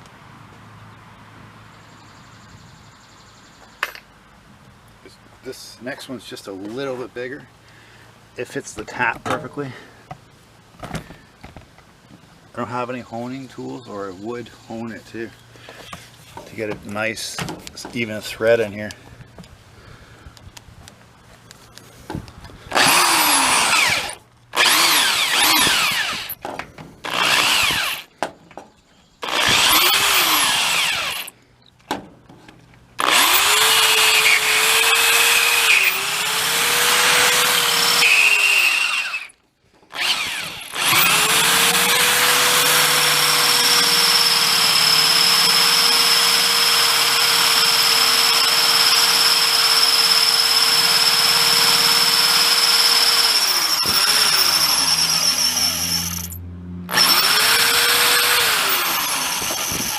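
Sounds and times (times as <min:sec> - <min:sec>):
electric drill boring: 0:22.7 - 0:26.4, 0:27.0 - 0:28.1, 0:29.2 - 0:31.3, 0:33.0 - 0:59.9.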